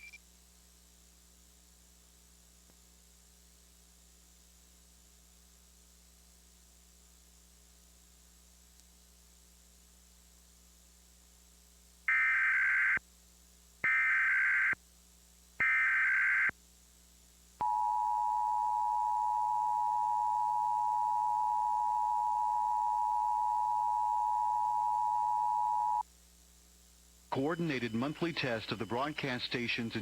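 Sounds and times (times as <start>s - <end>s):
digital data bursts: 27.4s - 30.0s.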